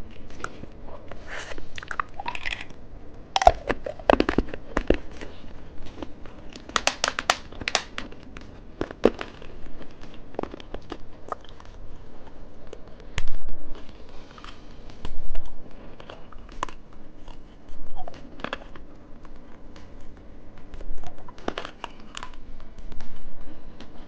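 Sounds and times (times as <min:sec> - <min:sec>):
candy being crunched: 0:01.4 - 0:02.8, 0:03.4 - 0:11.8.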